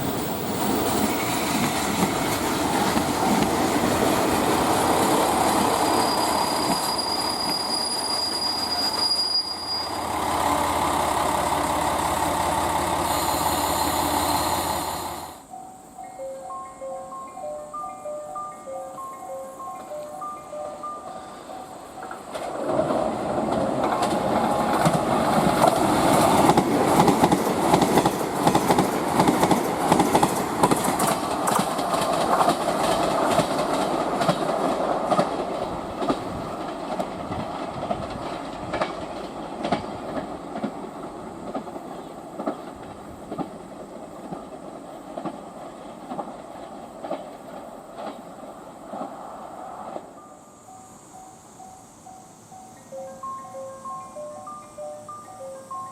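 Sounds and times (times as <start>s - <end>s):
train wheels clattering over rail joints: 0.0s - 9.2s, 22.0s - 49.2s.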